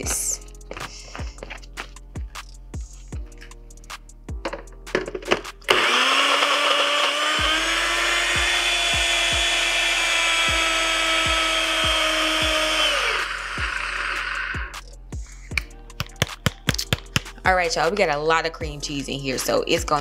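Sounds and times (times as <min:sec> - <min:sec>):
electric blender motor running: 0:05.7 - 0:14.7.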